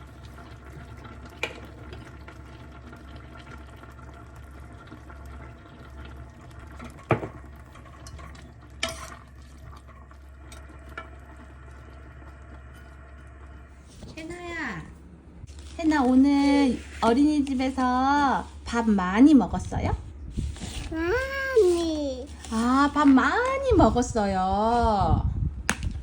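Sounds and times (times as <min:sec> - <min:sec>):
water running from a tap: 0:00.0 - 0:14.8.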